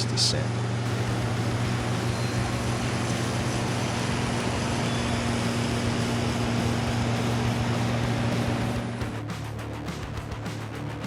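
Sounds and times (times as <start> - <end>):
road and wind noise: 0.6 - 9.1
truck engine droning: 0.8 - 9.2.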